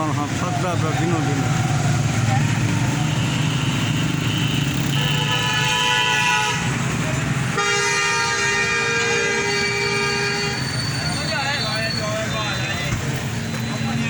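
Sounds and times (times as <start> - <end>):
road and engine rumble: 0.0 - 14.0
vehicle horn blasts: 3.2 - 6.7, 7.6 - 11.0.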